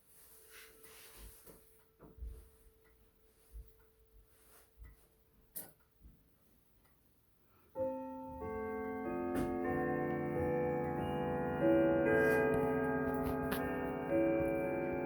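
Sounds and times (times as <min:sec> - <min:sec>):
grandfather clock chime melody: 0:07.8 - 0:15.0.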